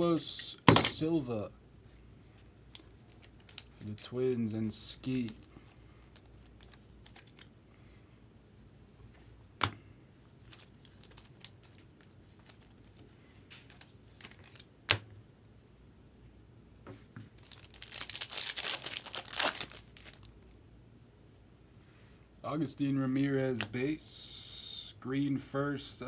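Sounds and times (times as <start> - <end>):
wrapper crinkling torn open: 2.7 - 4.1, 5.0 - 5.5, 6.1 - 7.5, 10.4 - 13.0, 17.4 - 20.5
trading cards handled: 5.0 - 7.5.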